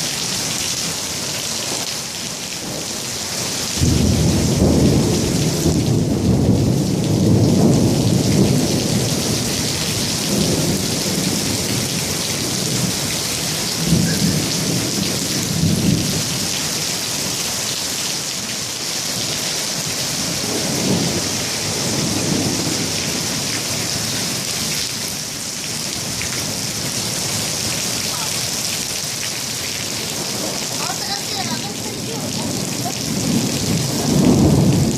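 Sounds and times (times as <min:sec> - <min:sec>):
heavy rain pouring: 0:00.0 - 0:34.9
rolling thunder: 0:03.8 - 0:16.6, 0:20.3 - 0:24.1, 0:31.9 - 0:34.9.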